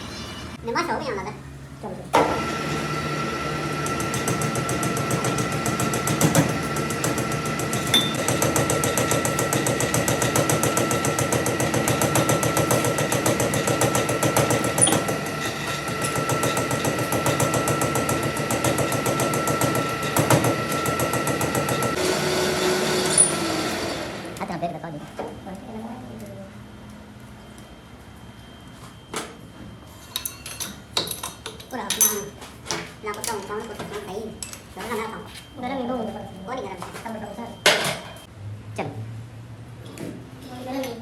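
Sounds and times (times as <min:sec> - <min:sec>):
metalworking machine clattering: 0:03.8 - 0:22.0.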